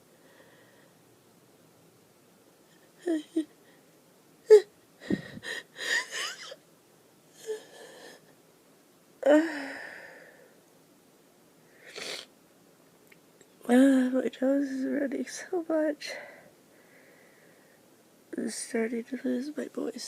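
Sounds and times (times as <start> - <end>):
wheezy gasping breaths: 5.0 - 6.6, 9.3 - 10.6, 11.7 - 12.3.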